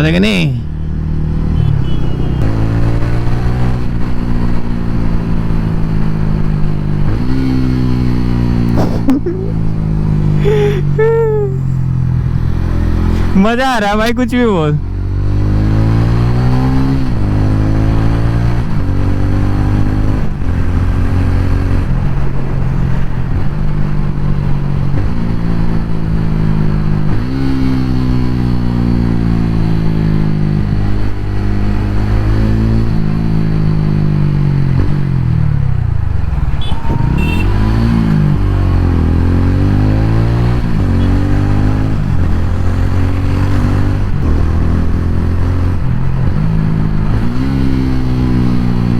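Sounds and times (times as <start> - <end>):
motorcycle engine accelerating: 0.9 - 13.5, 14.8 - 48.9.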